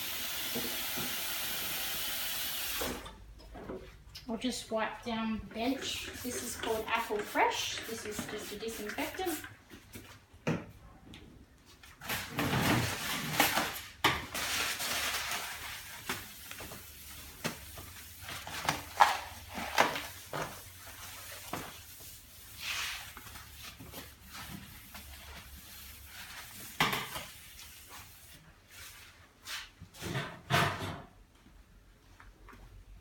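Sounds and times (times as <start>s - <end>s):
wiping bench surface: 20.1s - 29.7s.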